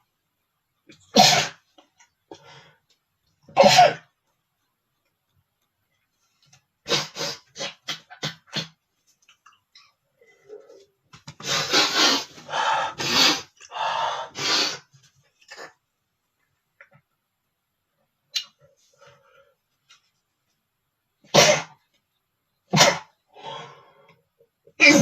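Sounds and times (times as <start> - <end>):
loud heavy breathing: 11.4 - 14.9
man sniffing: 11.4 - 14.9.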